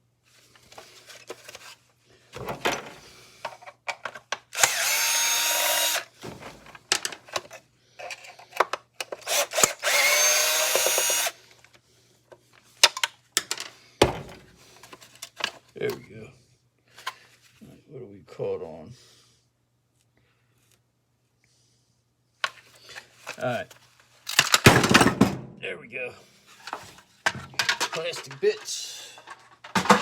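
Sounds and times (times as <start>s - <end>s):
cordless drill whining: 4.5s - 6.2s, 9.2s - 11.4s.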